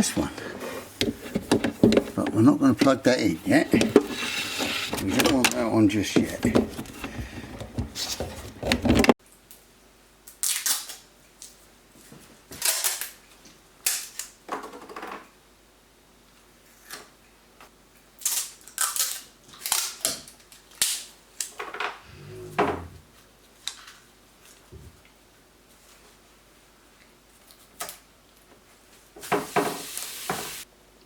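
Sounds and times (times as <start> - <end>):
rustling: 0.0 - 9.2.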